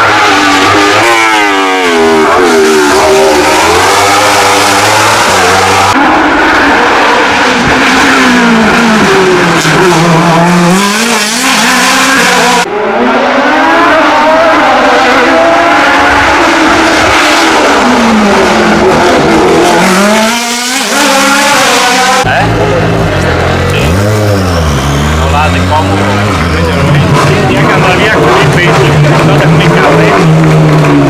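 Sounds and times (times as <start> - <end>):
race car engines revving: 0.0 - 31.0
tyre squeal: 23.8 - 25.4.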